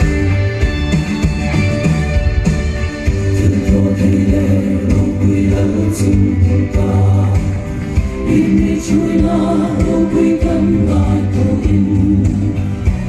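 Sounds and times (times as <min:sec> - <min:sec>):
low musical accompaniment: 0:00.0 - 0:13.0
group singing a gospel hymn: 0:03.3 - 0:13.0.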